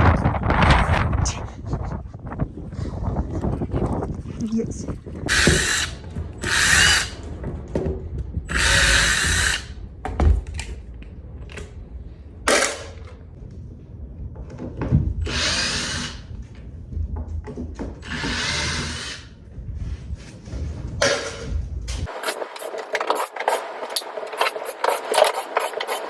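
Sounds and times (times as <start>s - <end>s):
power drill driving screws: 5.3s - 7.2s, 8.5s - 9.8s, 15.3s - 16.3s, 18.0s - 19.3s.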